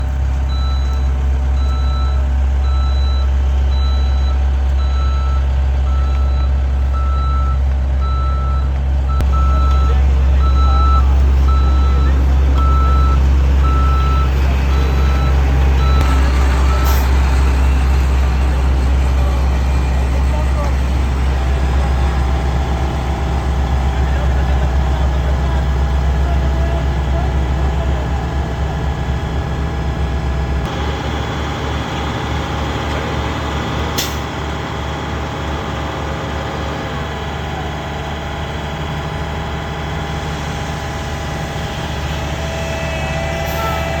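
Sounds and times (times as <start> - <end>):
vehicle engine rumble: 0.0 - 44.0
reversing alarm beeps: 0.5 - 20.6.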